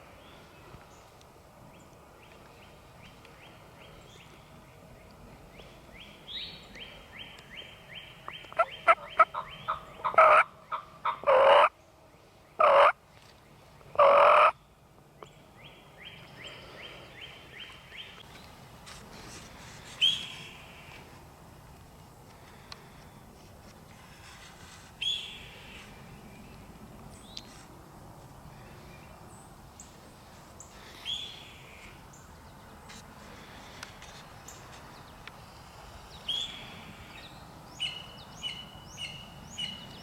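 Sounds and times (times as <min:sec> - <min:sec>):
sharp turkey call: 0:08.3 - 0:11.7, 0:12.6 - 0:13.0, 0:14.0 - 0:14.6
wild turkeys yelping: 0:08.3 - 0:11.7, 0:12.6 - 0:13.0, 0:14.0 - 0:14.6
turkey gobbling: 0:08.6 - 0:11.7, 0:12.6 - 0:13.0, 0:14.0 - 0:14.5.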